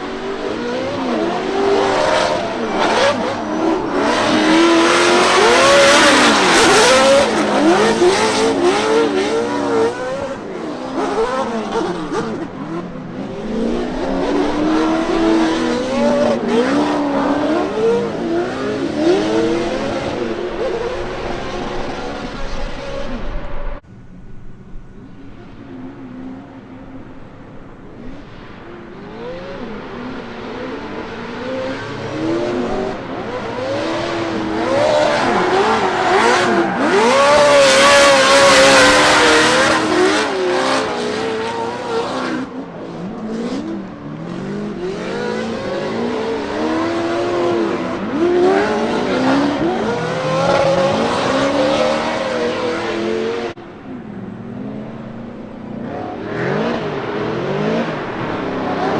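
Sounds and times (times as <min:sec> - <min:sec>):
car engines revving: 0:00.0 - 0:58.9
tyre squeal: 0:31.8 - 0:40.4.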